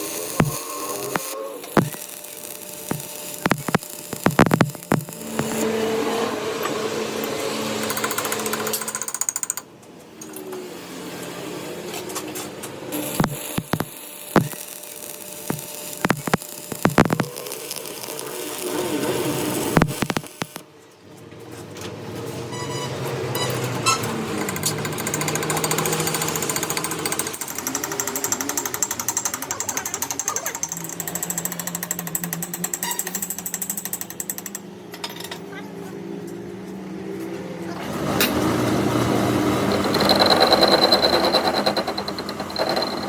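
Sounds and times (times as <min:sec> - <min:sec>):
power tool hammering rattle: 0:00.3 - 0:05.6, 0:12.9 - 0:18.8, 0:19.4 - 0:20.6.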